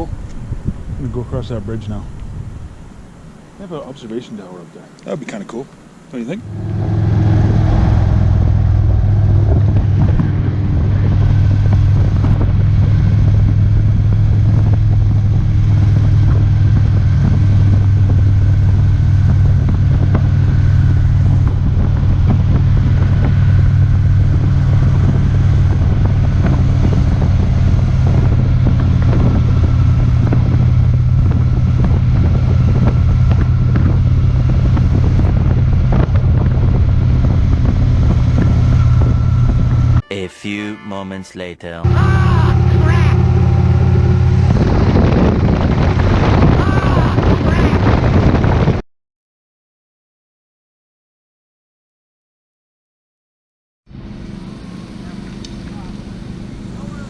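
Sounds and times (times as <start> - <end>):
motorcycle engine droning: 6.1 - 40.1, 41.8 - 48.7, 53.9 - 57.0.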